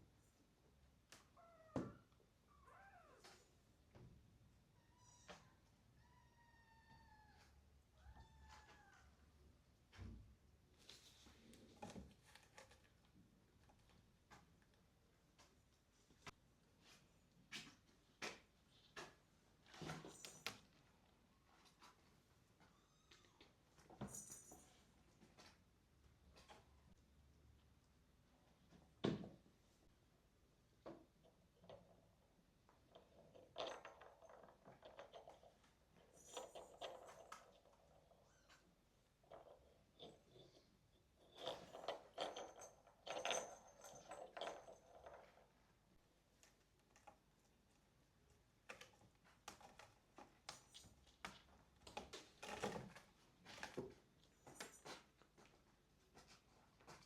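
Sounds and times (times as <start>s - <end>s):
kittens playing with toys: 10.7s - 16.0s, 22.9s - 27.0s, 30.9s - 57.0s.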